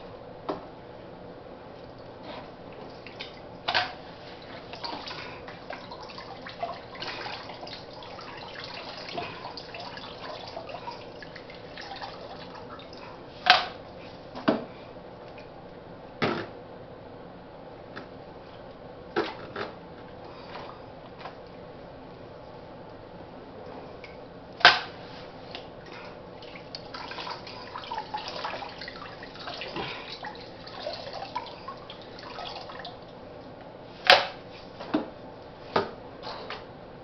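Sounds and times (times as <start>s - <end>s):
water sounds: 2.8s - 13.2s, 25.7s - 33.2s.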